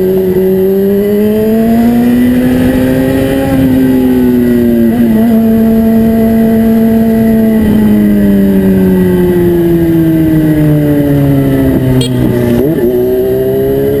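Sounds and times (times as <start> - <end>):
loud motorcycle engine running: 0.0 - 14.0.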